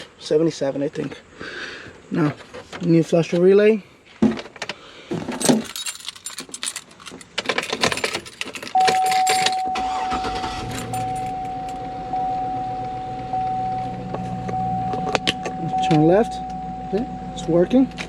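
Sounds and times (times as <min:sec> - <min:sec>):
keys jangling: 0:05.4 - 0:11.8
car warning chime: 0:08.7 - 0:18.0
low hum: 0:08.8 - 0:18.0.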